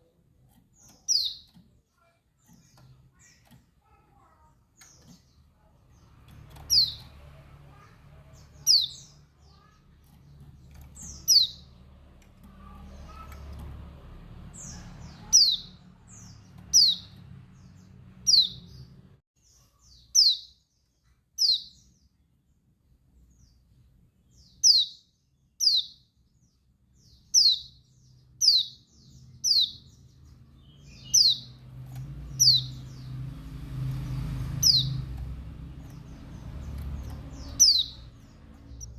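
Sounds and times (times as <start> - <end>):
bird calling chirps: 34.5 - 38.9.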